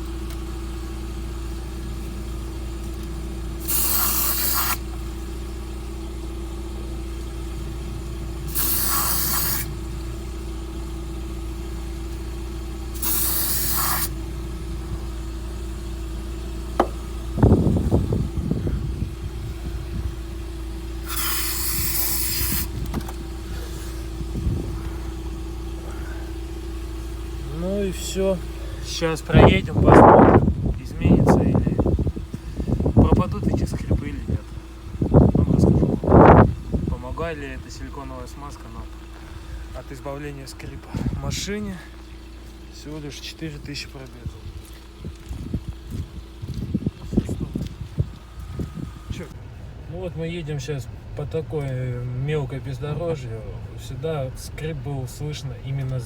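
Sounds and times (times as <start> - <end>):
steady low hum: 0.0 - 56.0
aerosol can spraying: 3.6 - 4.9, 8.5 - 9.7, 13.0 - 14.2, 21.0 - 23.1
clattering knock: 16.8 - 17.0.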